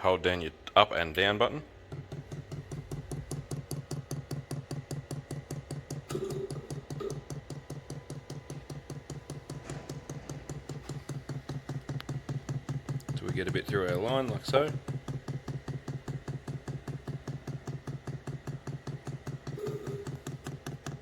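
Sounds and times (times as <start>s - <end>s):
fuel pump clicking rapidly: 1.7s - 21.0s.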